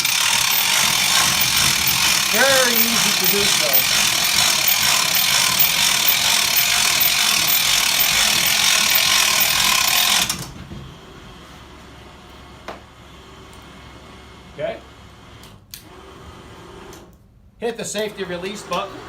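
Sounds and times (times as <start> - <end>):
lift mechanism grinding: 0.0 - 10.5.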